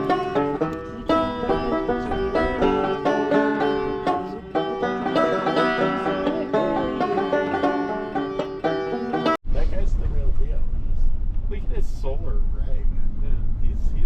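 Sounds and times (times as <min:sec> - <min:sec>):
plucked banjo notes: 0:00.0 - 0:09.4
upbeat bluegrass tune: 0:00.0 - 0:09.4.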